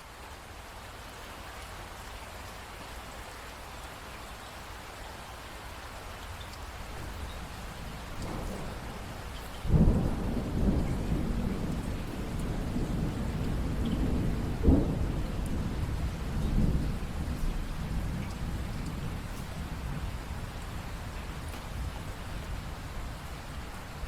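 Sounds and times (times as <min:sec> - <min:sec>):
steady rain: 0:00.0 - 0:24.0
thunder rumbling: 0:07.0 - 0:24.0.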